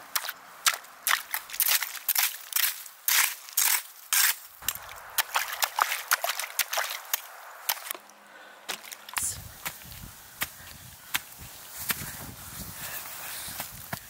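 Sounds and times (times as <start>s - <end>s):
ice and snow crunching: 0.0s - 8.0s, 8.7s - 14.0s
faint water sloshing: 4.6s - 9.2s.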